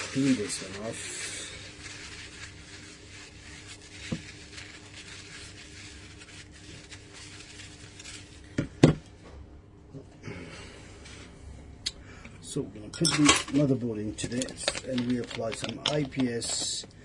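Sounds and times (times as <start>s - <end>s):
hands rubbing and scraping: 0.0s - 8.5s.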